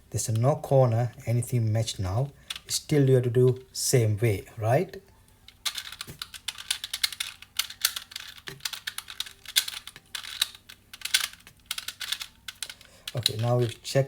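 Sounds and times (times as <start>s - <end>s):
plastic puzzle cube clicking: 5.4s - 13.8s.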